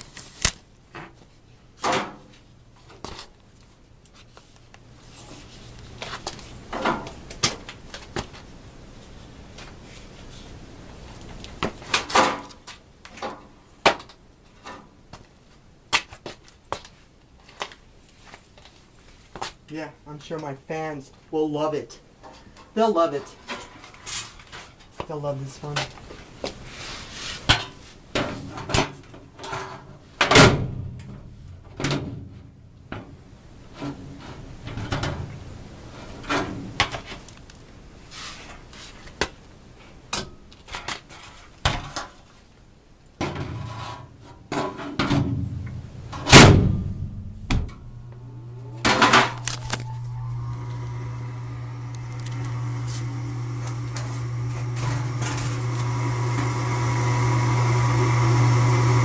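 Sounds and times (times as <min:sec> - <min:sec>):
electric motor humming: 0:48.1 - 0:59.0.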